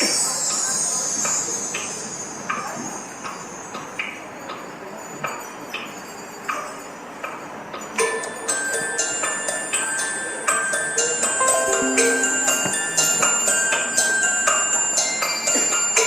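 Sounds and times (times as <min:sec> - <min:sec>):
high shimmering chime: 0:11.4 - 0:13.2.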